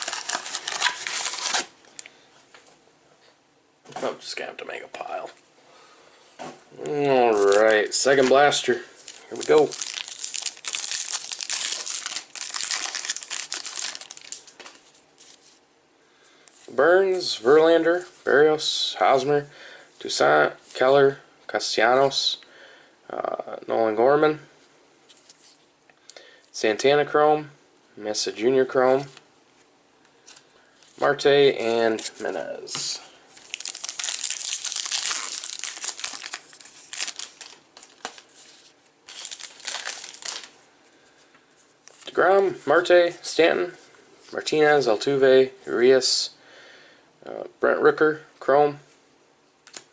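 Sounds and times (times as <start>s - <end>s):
plastic wrapping crinkling: 0.0s - 2.1s, 7.0s - 15.6s, 31.6s - 40.7s.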